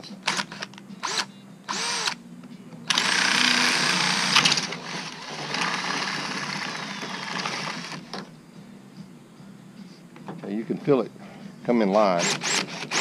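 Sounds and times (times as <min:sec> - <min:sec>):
power drill drilling metal: 0:02.9 - 0:08.0, 0:12.1 - 0:13.0.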